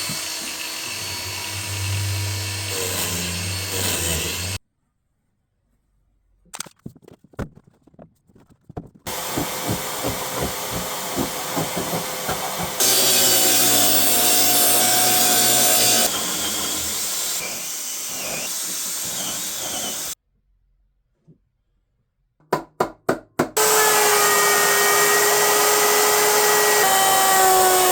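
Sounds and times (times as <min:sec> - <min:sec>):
power tool running: 0:00.0 - 0:04.6, 0:09.1 - 0:20.2, 0:23.6 - 0:27.9
rhythmic strokes on wood: 0:09.1 - 0:20.2.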